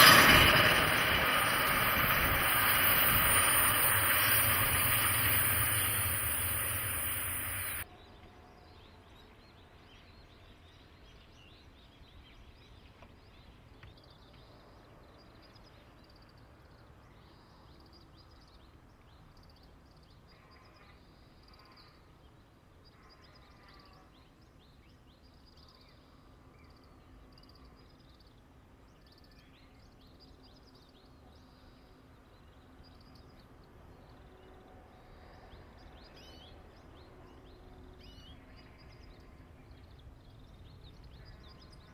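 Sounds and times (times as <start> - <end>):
loud train noise: 0.0 - 7.8
small birds chirping: 0.0 - 7.8.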